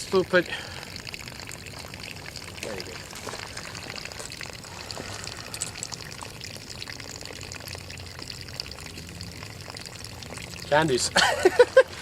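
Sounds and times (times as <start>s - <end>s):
water dripping: 0.0s - 12.0s
water pouring from barrel: 0.0s - 12.0s.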